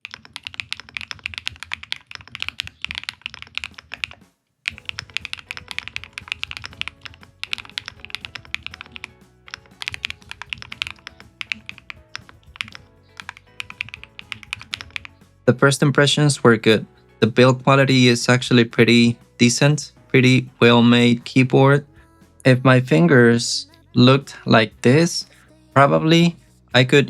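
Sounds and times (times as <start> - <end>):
fast mechanical keyboard typing: 0.0 - 15.2
background music: 2.4 - 27.0.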